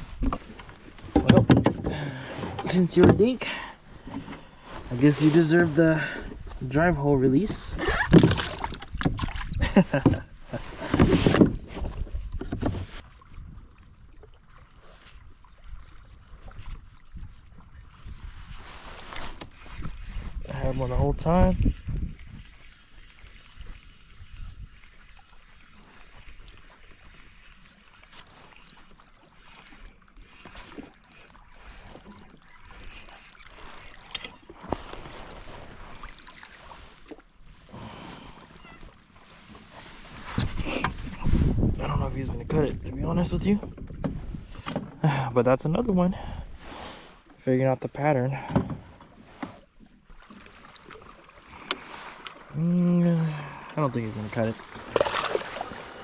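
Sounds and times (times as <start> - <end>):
water sloshing and splashing: 7.4 - 37.7, 48.5 - 52.6, 53.8 - 56.0
wind noise on microphone: 7.5 - 14.2, 15.5 - 24.9, 40.2 - 44.8
rapid ticking: 19.2 - 20.7, 22.8 - 34.4
knocks and clicks: 28.9 - 34.4.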